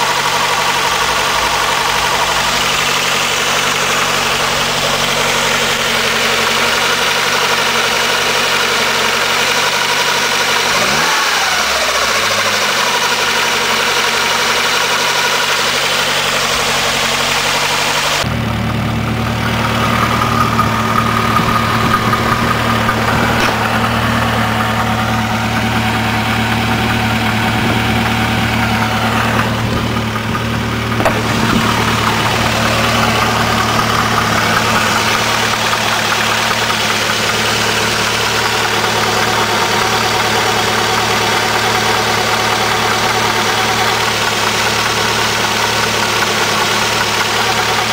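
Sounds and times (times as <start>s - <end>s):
car engine idling with knocking: 0.0s - 47.9s
low hum: 19.3s - 36.2s.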